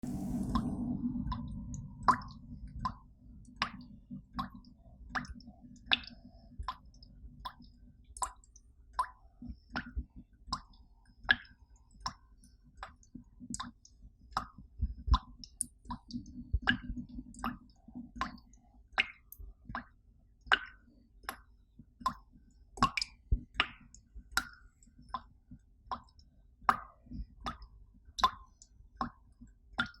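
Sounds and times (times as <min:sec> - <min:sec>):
low hum: 0:00.0 - 0:06.7
water drops plopping: 0:00.4 - 0:03.0.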